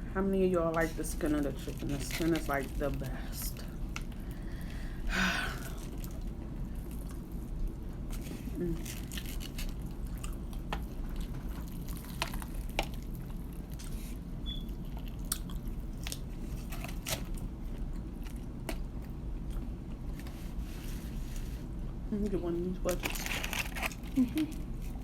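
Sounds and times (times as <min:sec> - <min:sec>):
steady low hum: 0:00.0 - 0:25.0
person chewing fried chicken: 0:05.6 - 0:21.2.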